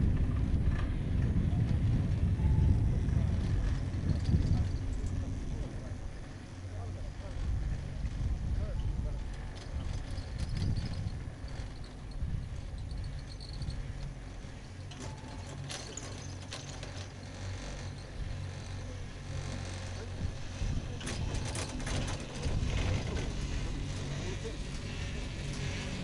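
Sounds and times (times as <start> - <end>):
low mechanical hum: 0.0 - 26.0.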